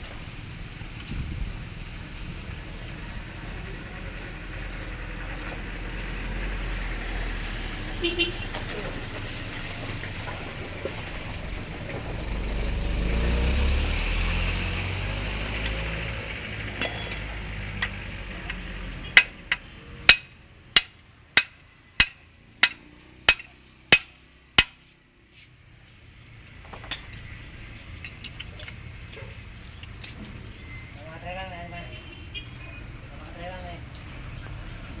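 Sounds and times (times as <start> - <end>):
hammer tapping on metal: 16.8 - 18.6, 19.2 - 24.8.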